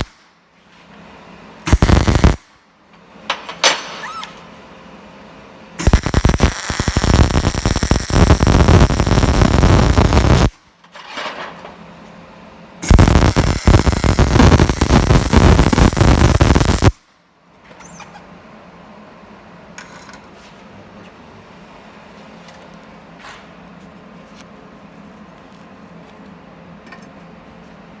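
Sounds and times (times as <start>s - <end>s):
low background hum: 0.0s - 28.0s
welding arc crackling: 1.7s - 2.6s, 5.8s - 10.6s, 12.8s - 17.0s.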